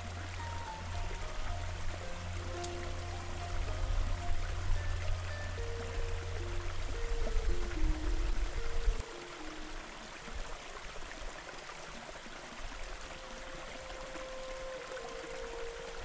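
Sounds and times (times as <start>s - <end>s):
deep low rumble: 0.0s - 9.0s
soft background music: 0.0s - 16.0s
waterfall and river rushing: 0.0s - 16.0s.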